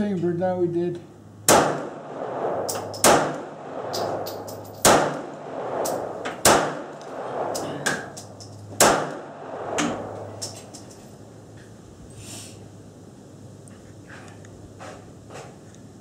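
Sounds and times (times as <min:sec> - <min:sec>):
pistol shots with echo: 0:01.5 - 0:04.2, 0:04.8 - 0:06.9, 0:08.8 - 0:09.6.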